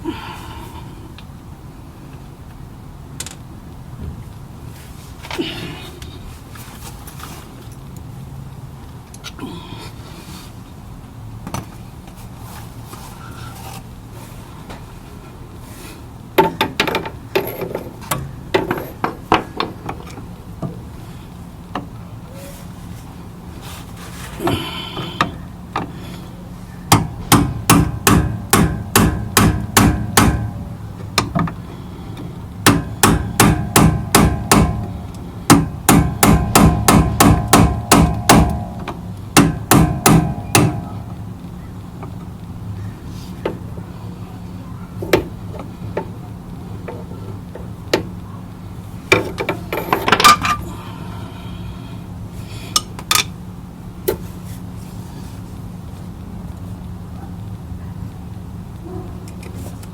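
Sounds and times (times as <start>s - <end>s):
hammer striking metal: 26.9s - 30.6s, 32.7s - 34.9s, 35.5s - 41.0s.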